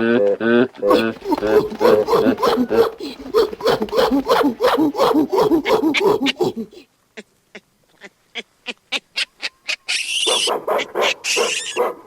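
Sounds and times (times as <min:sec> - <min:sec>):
primate grunts: 0:00.8 - 0:06.9
shrill primate scream: 0:00.9 - 0:06.8, 0:09.9 - 0:11.9.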